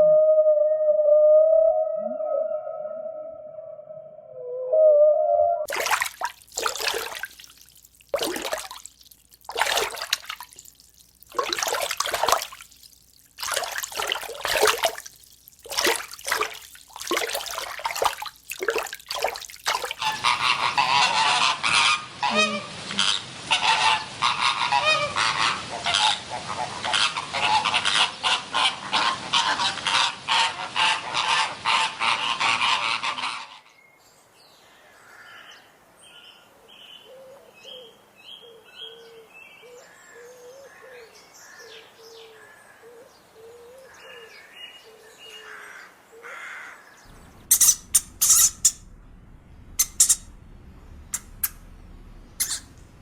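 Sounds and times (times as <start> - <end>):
large birds honking: 19.8 - 25.6, 46.4 - 53.0.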